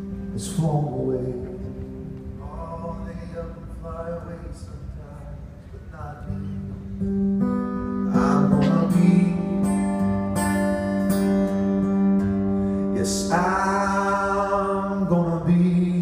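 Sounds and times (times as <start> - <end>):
acoustic guitar music: 0.0 - 16.0
wavering held note: 8.6 - 9.4.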